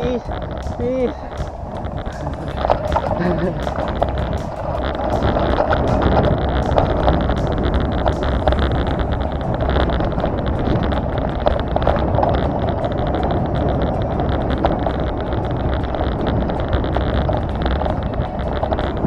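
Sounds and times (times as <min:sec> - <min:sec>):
vehicle rumble: 0:00.0 - 0:19.0
wind buffeting microphone: 0:00.0 - 0:19.0.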